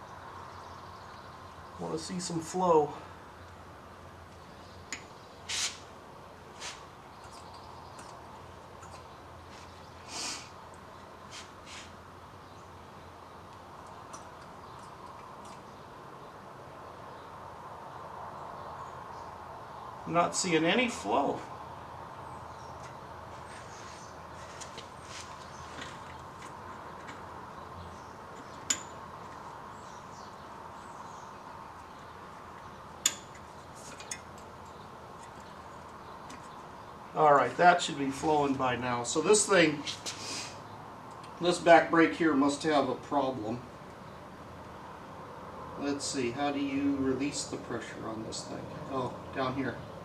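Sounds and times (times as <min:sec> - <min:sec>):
faint birds: 0:00.0 - 0:50.0
rush of air hiss: 0:05.5 - 0:05.9, 0:10.1 - 0:10.6.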